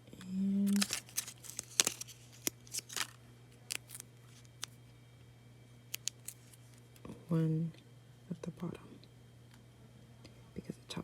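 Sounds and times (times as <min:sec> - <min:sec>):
faint low hum: 0:00.0 - 0:11.0
scissors snipping paper: 0:00.7 - 0:04.7, 0:06.0 - 0:06.5.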